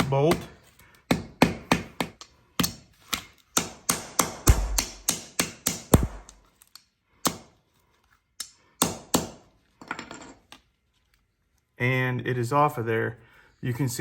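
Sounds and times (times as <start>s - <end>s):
metal-on-metal tapping: 3.9s - 6.4s.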